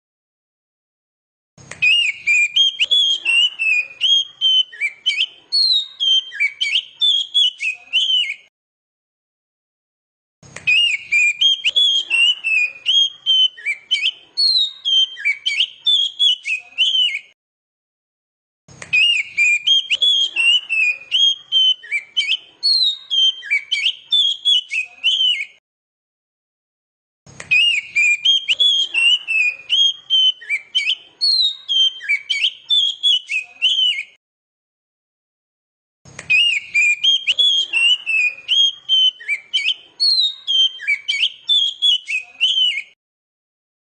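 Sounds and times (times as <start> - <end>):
bird song whistles and chirps: 1.7 - 8.5, 10.6 - 17.4, 18.8 - 25.6, 27.4 - 34.2, 36.2 - 43.0.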